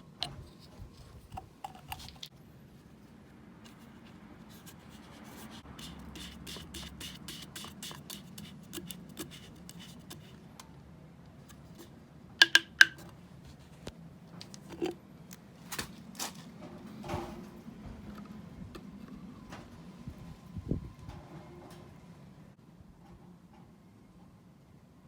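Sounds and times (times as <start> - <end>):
metal tools clicking and tapping: 12.4 - 13.1.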